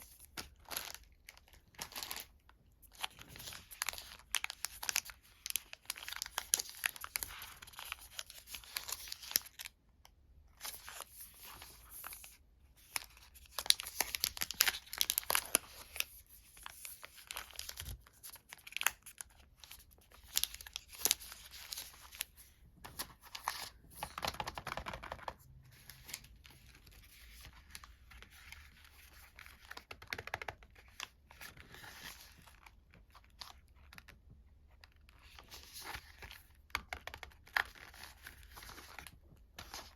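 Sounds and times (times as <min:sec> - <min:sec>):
wrappers crinkling and tearing: 0:00.0 - 0:09.7, 0:12.9 - 0:22.3.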